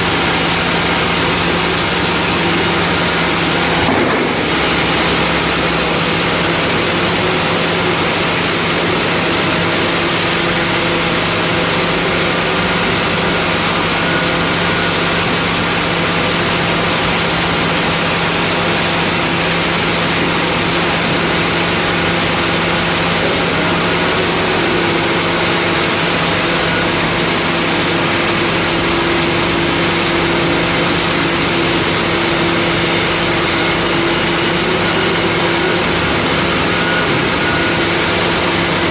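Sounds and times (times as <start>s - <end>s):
engine running: 0.0s - 38.9s.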